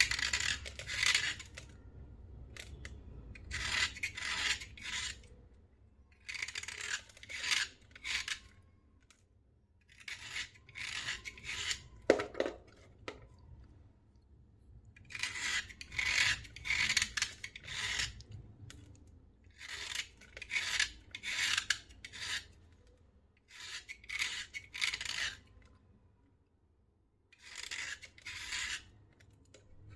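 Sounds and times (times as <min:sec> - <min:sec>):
slate pencils rasping: 0:00.0 - 0:01.7, 0:02.6 - 0:05.4, 0:06.2 - 0:08.6, 0:09.9 - 0:12.0, 0:15.0 - 0:18.4, 0:19.5 - 0:22.6, 0:23.5 - 0:25.5, 0:27.4 - 0:29.0.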